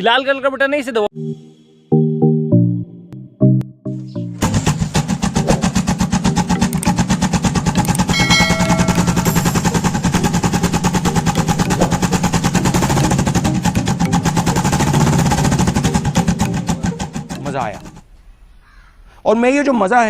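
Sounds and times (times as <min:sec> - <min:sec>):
motorcycle engine exhaust beats: 0:04.4 - 0:18.0.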